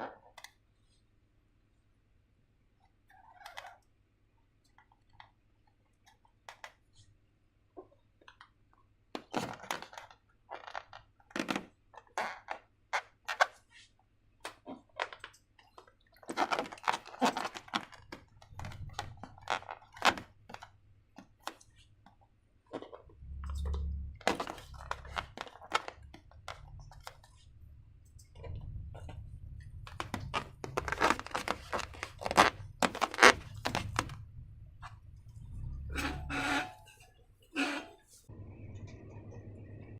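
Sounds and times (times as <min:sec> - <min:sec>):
low dull thuds: 0:18.3 - 0:19.5, 0:23.1 - 0:36.0.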